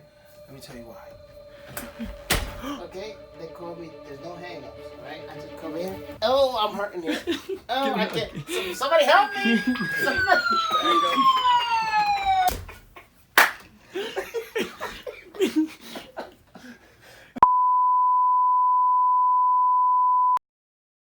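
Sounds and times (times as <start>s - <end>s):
falling whistle tone: 0.0s - 6.2s, 7.9s - 12.7s
flat electronic beep: 0.0s - 6.4s, 8.2s - 12.5s.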